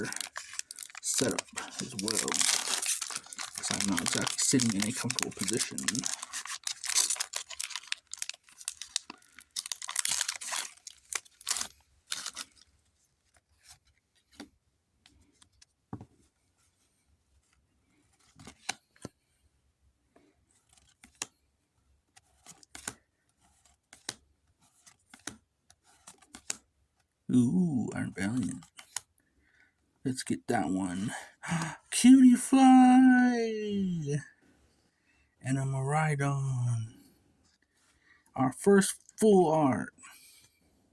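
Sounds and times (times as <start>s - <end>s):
foil wrapper tearing and crinkling: 0.0s - 12.6s
light clicks and taps of cards: 20.8s - 21.4s, 23.9s - 26.6s.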